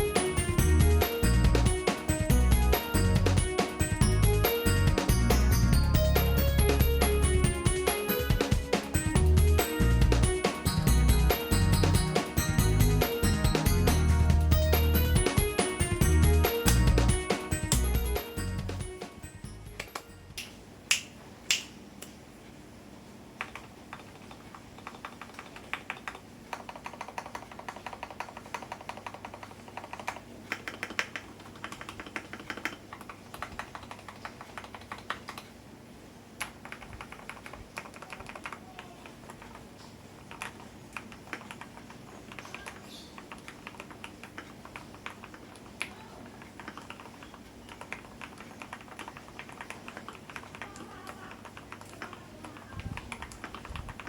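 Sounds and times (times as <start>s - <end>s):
mechanical keyboard typing: 23.4s - 35.5s, 36.4s - 39.6s, 40.2s - 54.0s.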